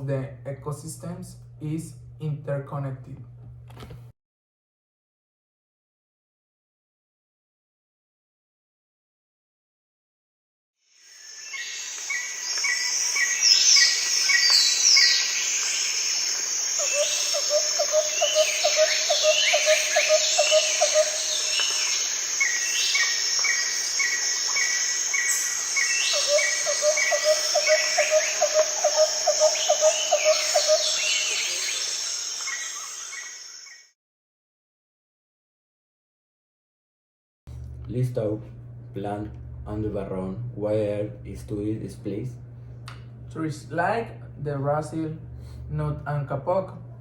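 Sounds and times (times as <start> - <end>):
insect drone: 10.8 - 33.9
bird calls: 11.4 - 33.8.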